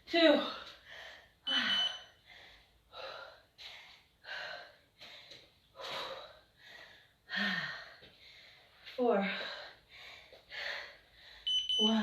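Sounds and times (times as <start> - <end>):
person panting heavily: 2.2 - 8.7.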